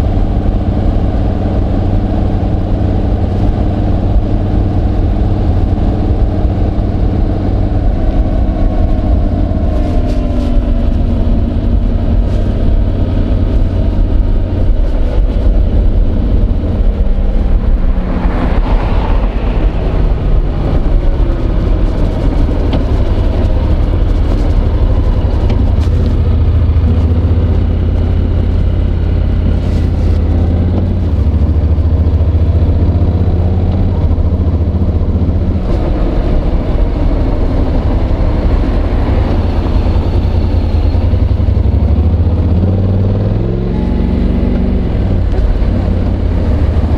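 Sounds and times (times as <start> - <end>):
motorcycle engine running: 0.0 - 46.9
microphone scraping on fabric: 29.4 - 30.2.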